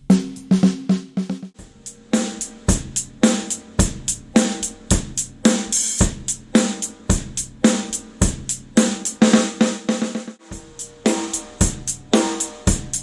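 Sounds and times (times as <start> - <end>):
snare drum hits: 0.0 - 1.6
bass drum: 0.0 - 1.7
hi-hat strokes: 0.0 - 9.3.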